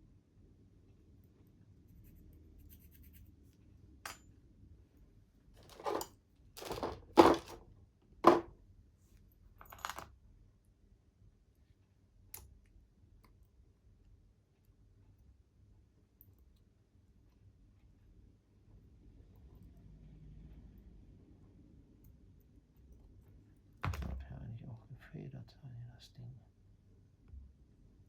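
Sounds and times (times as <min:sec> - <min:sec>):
metal parts clinking: 0:05.6 - 0:07.6.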